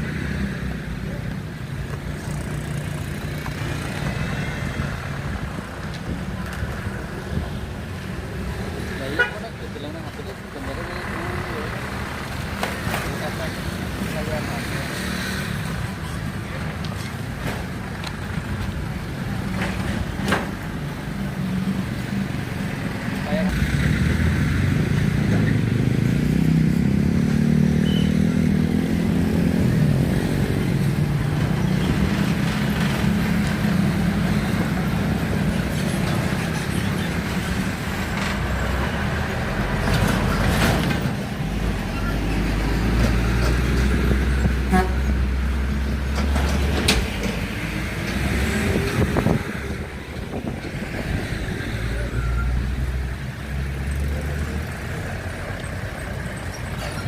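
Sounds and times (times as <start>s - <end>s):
truck and bus diesel engines: 0.0s - 57.0s
engine revving: 23.3s - 30.9s.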